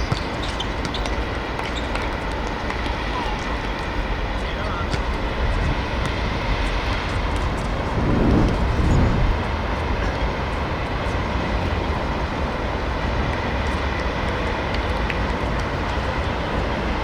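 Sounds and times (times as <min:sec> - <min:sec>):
steady low bass noise: 0:07.7 - 0:09.6.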